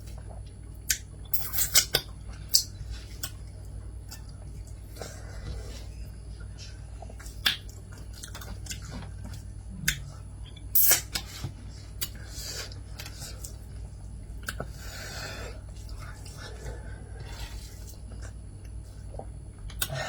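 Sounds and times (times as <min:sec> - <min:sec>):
low steady hum: 0:00.0 - 0:20.0
chewing: 0:00.1 - 0:10.6.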